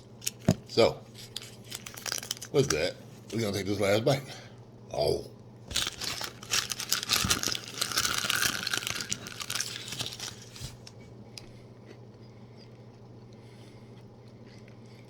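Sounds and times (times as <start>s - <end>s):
crunchy chewing: 5.7s - 15.0s.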